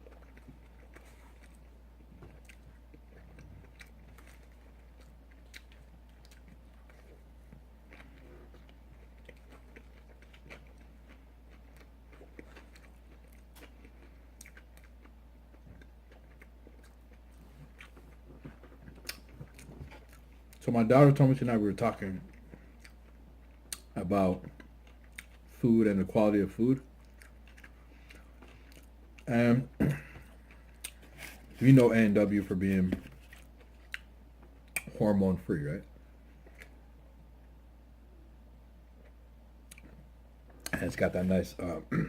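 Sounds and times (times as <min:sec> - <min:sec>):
chewing and biting food: 0:00.0 - 0:20.6, 0:22.2 - 0:25.6, 0:26.8 - 0:29.3, 0:30.1 - 0:31.9, 0:33.0 - 0:34.9.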